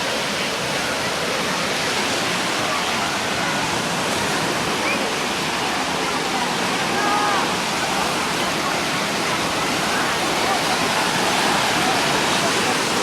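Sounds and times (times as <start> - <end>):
faint distant voices: 0.0 - 13.0
rushing water: 0.0 - 13.0.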